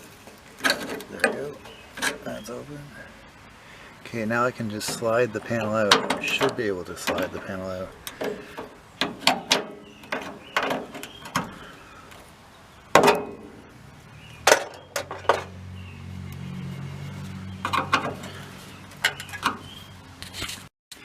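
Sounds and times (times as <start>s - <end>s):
sheet metal knocks and scrapes: 4.7s - 11.6s, 12.9s - 13.6s, 17.6s - 18.4s.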